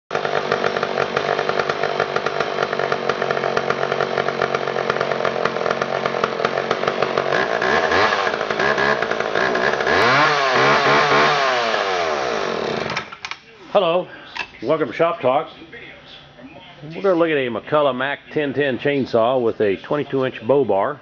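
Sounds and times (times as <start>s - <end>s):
chainsaw idling and revving: 0.1s - 13.1s.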